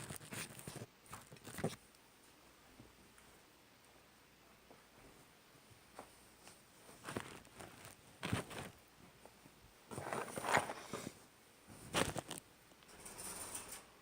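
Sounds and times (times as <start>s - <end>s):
fabric rustling and scraping: 6.0s - 8.8s, 9.9s - 12.4s.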